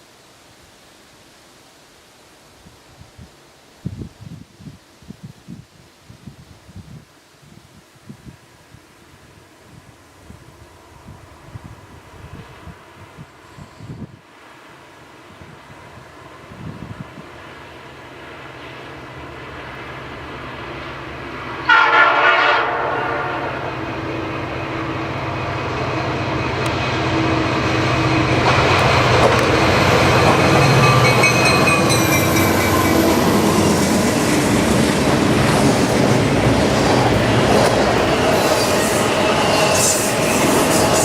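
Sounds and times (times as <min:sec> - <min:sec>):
train rumbling on rails: 0:09.2 - 0:41.0
locomotive air horn: 0:21.6 - 0:25.1.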